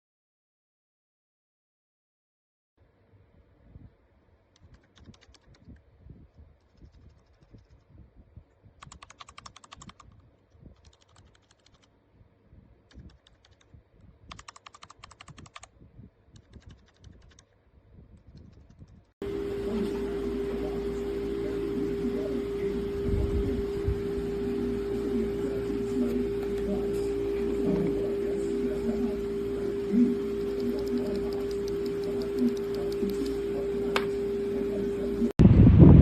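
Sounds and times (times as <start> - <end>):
mechanical keyboard typing: 4.6 - 5.8, 8.8 - 11.9, 12.9 - 13.7, 14.3 - 15.7, 16.4 - 17.5, 30.4 - 33.4
loud steady tone: 19.2 - 36.0.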